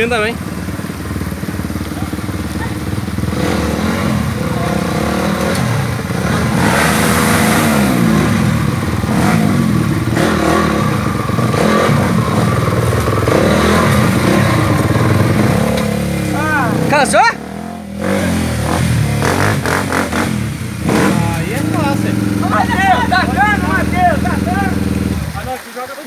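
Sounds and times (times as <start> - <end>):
dirt bike engine revving: 0.0 - 25.5.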